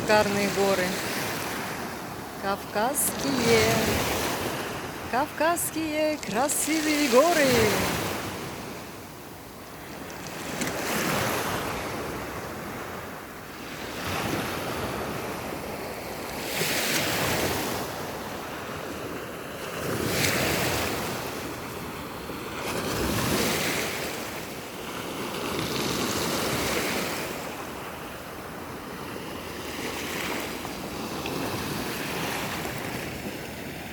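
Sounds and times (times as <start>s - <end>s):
sea waves washing in: 0.0s - 18.8s.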